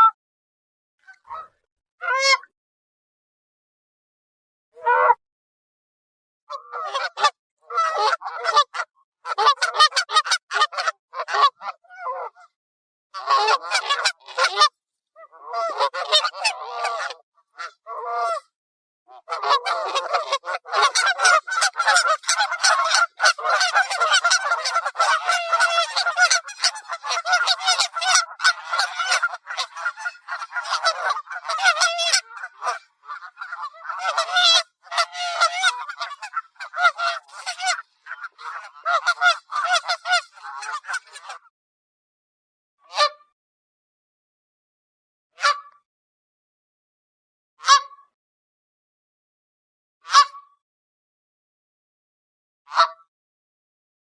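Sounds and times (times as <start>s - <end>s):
geese honking: 1.1s - 2.5s, 4.8s - 5.2s, 6.5s - 12.5s, 13.2s - 14.7s, 15.3s - 18.4s, 19.1s - 41.5s.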